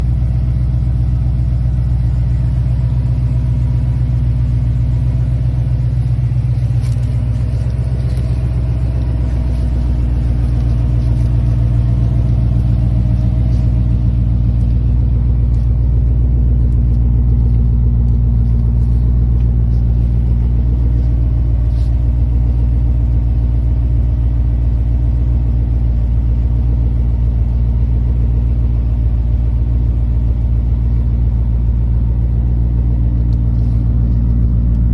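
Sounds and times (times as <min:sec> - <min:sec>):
car engine idling: 0:00.0 - 0:34.9.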